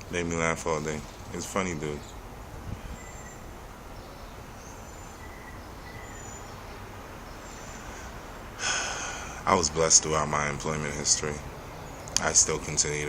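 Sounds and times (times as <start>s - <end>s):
steady background noise: 0.0s - 13.0s
faint high-pitched chirps: 2.9s - 8.2s.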